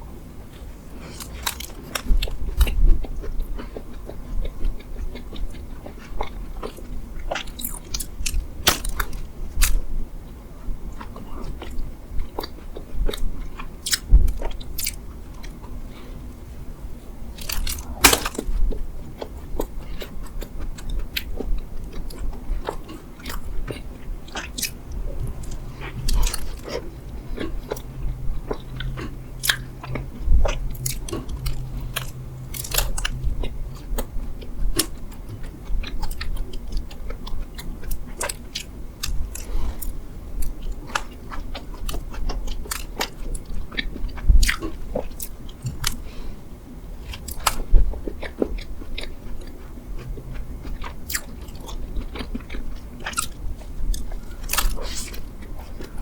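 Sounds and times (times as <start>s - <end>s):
biting and chewing crunchy bread: 0.4s - 56.0s.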